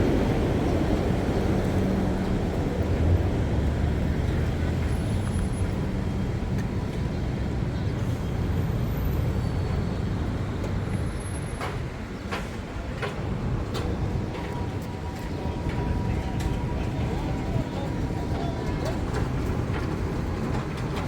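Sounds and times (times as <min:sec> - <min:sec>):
city street traffic rumble: 0:00.0 - 0:21.0.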